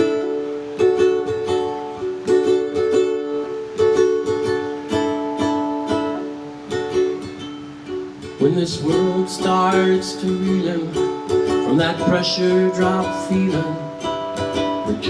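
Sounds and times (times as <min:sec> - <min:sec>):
strummed string instrument chords: 0:00.0 - 0:15.0.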